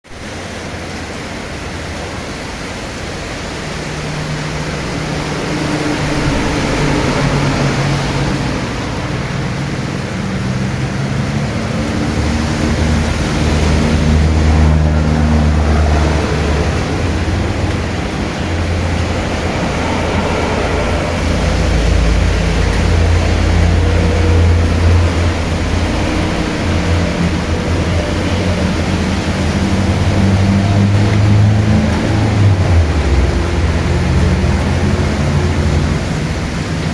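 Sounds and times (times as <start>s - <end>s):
rain falling: 0.1s - 36.9s
low hum: 3.5s - 35.5s.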